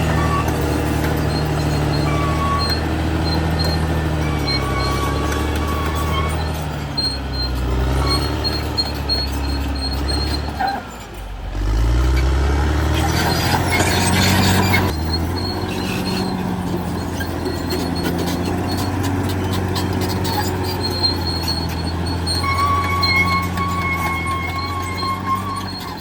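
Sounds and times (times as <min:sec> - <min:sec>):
bulldozer diesel engine revving: 0:00.0 - 0:26.0.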